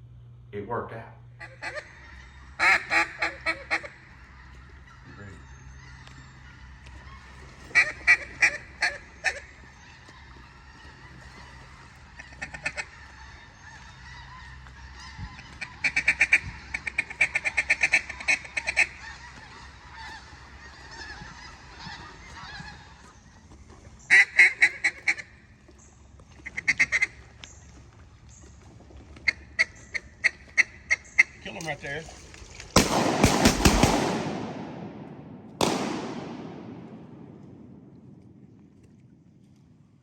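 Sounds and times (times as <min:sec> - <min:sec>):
duck calls quacking: 0:01.4 - 0:23.0, 0:24.1 - 0:25.4, 0:26.4 - 0:27.2, 0:29.2 - 0:32.0, 0:32.8 - 0:38.0.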